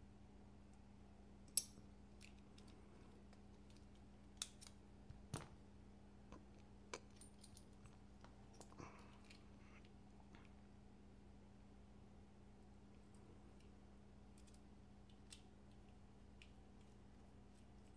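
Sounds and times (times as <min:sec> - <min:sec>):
faint steady hum: 0:00.0 - 0:17.9
metal knife parts clicking: 0:04.4 - 0:04.8.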